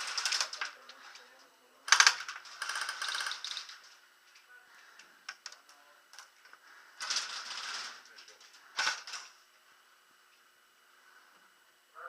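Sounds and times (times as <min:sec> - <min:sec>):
airsoft rifle firing bursts: 0:01.9 - 0:03.5.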